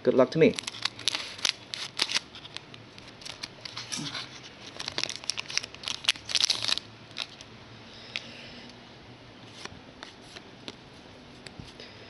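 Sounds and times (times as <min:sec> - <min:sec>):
wrapper tearing and crinkling: 0:00.5 - 0:07.4.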